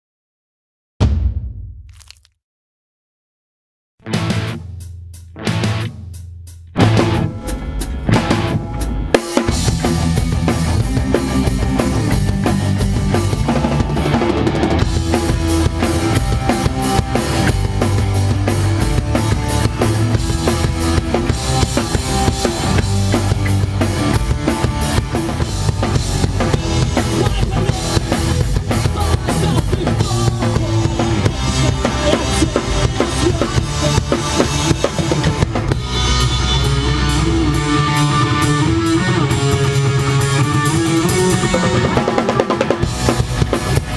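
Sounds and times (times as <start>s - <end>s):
bass drum and snare hits: 1.0s - 2.1s, 4.1s - 9.9s
punk rock band playing: 4.0s - 43.9s.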